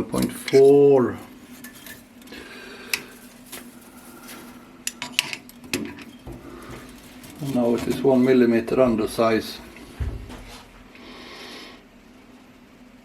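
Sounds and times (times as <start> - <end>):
metal tools clinking: 0.0 - 0.9, 1.6 - 2.1
faint steady hum: 0.0 - 13.0.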